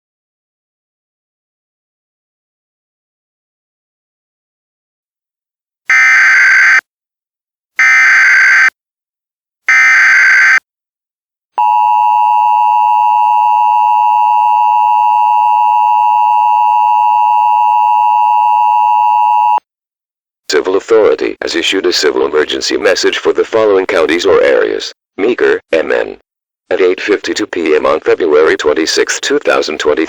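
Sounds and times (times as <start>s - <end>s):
data tone bursts: 11.6s - 19.6s
two-tone attention signal: 11.6s - 19.6s.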